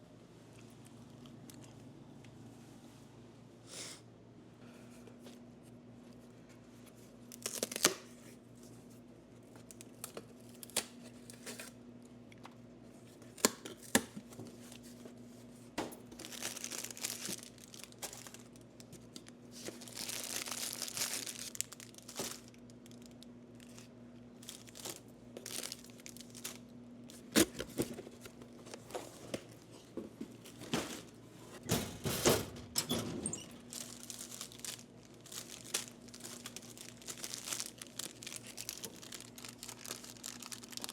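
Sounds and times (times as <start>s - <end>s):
plastic bags crinkling: 7.3s - 8.1s, 16.0s - 29.7s, 33.3s - 40.9s.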